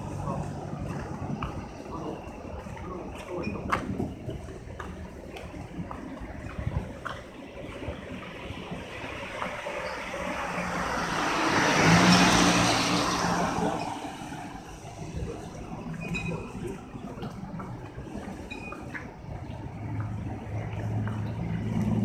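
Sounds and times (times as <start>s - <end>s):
car passing by: 7.9s - 17.3s.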